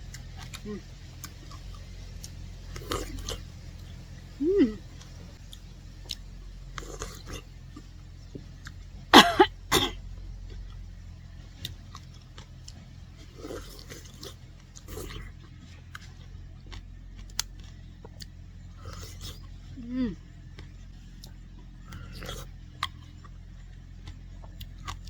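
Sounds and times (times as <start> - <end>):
person coughing: 9.1 - 10.0.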